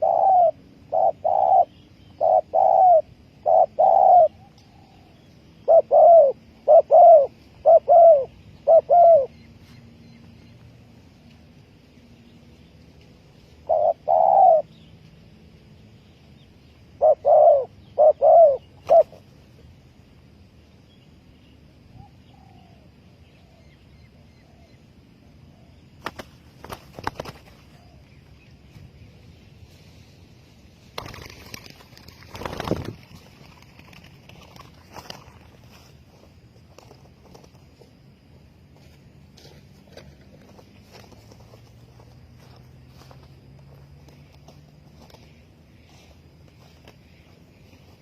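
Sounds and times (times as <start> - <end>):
dove cooing: 0.0 - 9.5, 13.6 - 14.8, 17.0 - 19.3
faint bird twittering: 0.0 - 15.2, 15.8 - 48.0.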